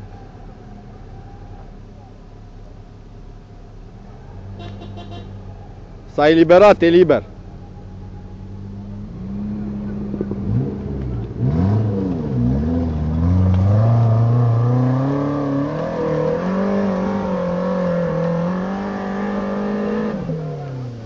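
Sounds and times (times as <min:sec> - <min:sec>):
vehicle engine revving hard: 0:08.4 - 0:21.0.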